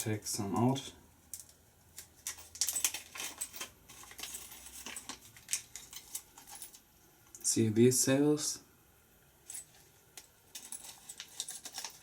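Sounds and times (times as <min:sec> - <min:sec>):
metal bolts clinking: 0:10.5 - 0:12.0.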